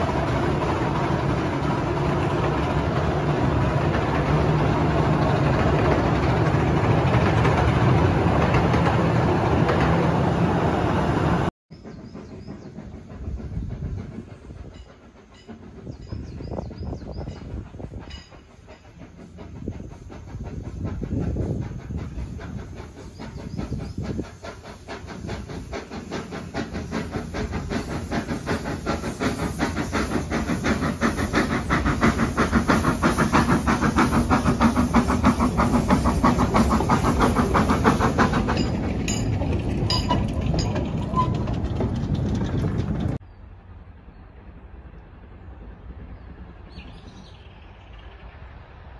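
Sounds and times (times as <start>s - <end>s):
steam locomotive exhaust beats: 0.0s - 43.2s.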